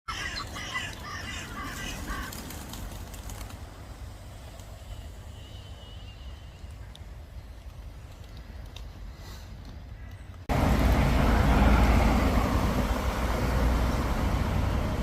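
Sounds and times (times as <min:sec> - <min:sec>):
harsh bird calls: 0:00.1 - 0:02.8
pigeon wings clapping: 0:01.6 - 0:03.8.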